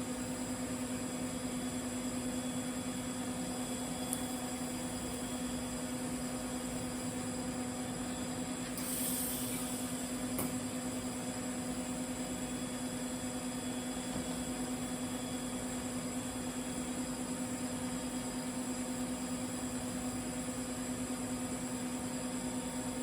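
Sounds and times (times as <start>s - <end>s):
welder electrical hum: 0.0s - 23.0s
short hiss: 8.8s - 9.9s.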